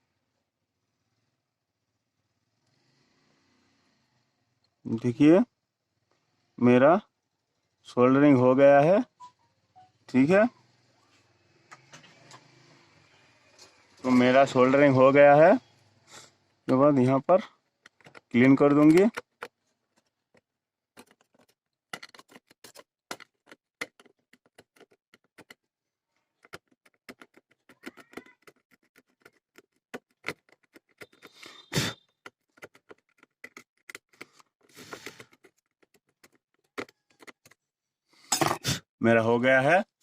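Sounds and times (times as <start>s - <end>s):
circuit board clicking and scratching: 17.7s - 19.6s, 21.0s - 25.6s, 26.4s - 37.6s
scraping on circuit board: 21.0s - 25.6s, 26.4s - 37.6s.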